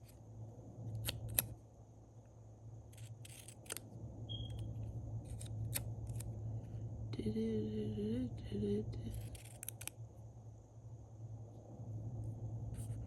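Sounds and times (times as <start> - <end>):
scissors snipping paper: 0.9 - 1.6, 2.9 - 4.6, 5.2 - 6.3, 9.1 - 10.0.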